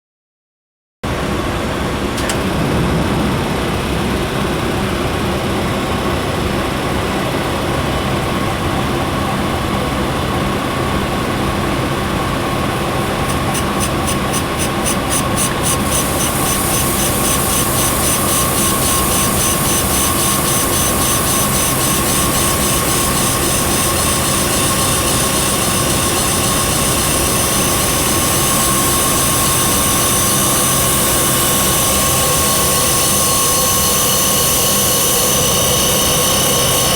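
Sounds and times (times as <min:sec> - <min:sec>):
grinding machine humming and whining: 0:01.1 - 0:36.9
high pulsing hiss: 0:12.8 - 0:36.9.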